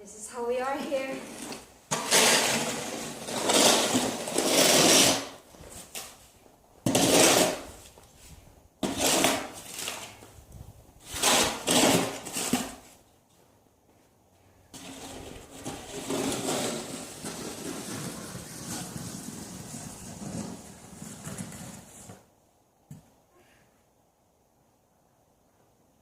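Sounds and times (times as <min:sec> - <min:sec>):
snow shovel scraping snow: 0:00.9 - 0:05.4, 0:06.9 - 0:07.8, 0:11.0 - 0:12.8, 0:14.8 - 0:22.1.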